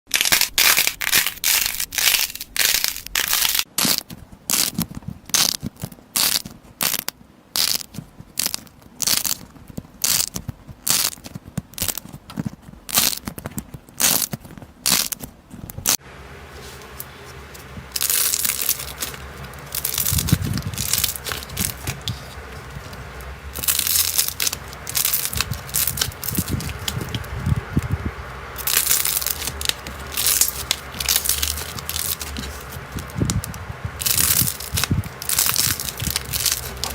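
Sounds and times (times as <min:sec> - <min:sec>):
slime hissing crinkly squishes: 0:00.1 - 0:36.9.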